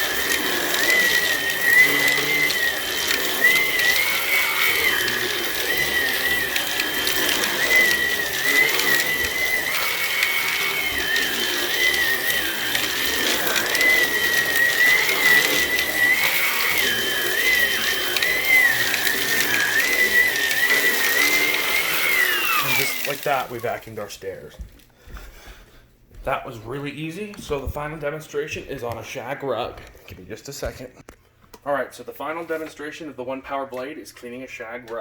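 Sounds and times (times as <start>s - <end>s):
vacuum cleaner motor whine: 0.0s - 24.8s.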